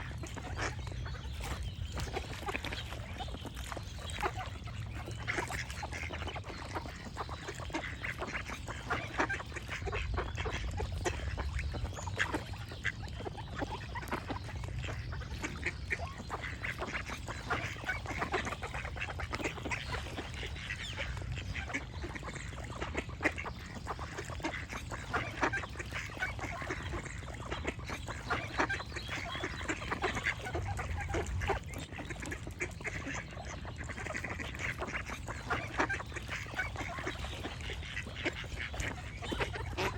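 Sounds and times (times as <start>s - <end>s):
ducks quacking: 0.0s - 39.9s
steady low rumble: 26.5s - 35.8s.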